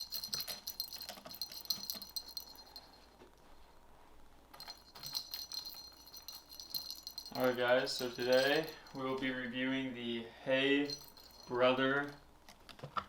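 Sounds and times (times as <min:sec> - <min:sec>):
jingle bells jingling: 0:00.0 - 0:03.0, 0:04.6 - 0:09.6, 0:10.7 - 0:12.2.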